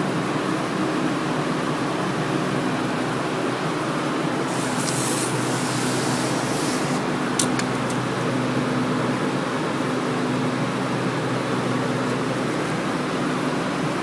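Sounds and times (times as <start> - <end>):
air conditioner hum: 0.0 - 14.0
fan whooshing: 4.3 - 8.6
high hiss: 4.5 - 7.1.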